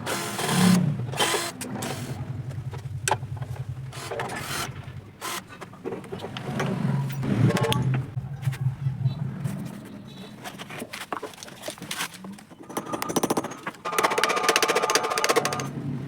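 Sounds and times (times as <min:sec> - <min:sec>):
electric motor humming: 0:00.0 - 0:03.0, 0:03.6 - 0:05.5
metal parts clicking and knocking: 0:10.6 - 0:15.7.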